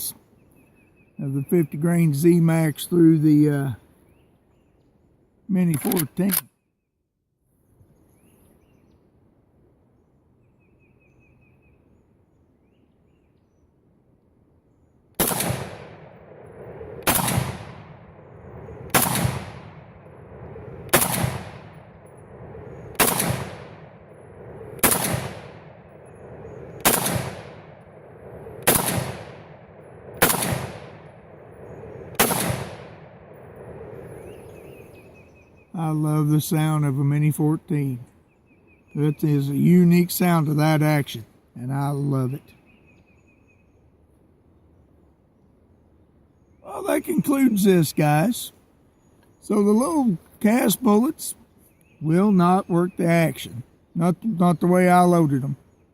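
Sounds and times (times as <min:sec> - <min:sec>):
rifle shots: 0:15.2 - 0:33.7.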